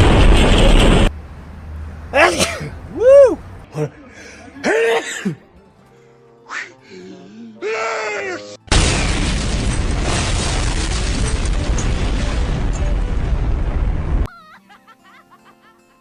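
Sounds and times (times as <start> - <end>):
loud explosion blast: 0.0 - 1.1, 8.7 - 14.3
faint music: 3.7 - 8.7.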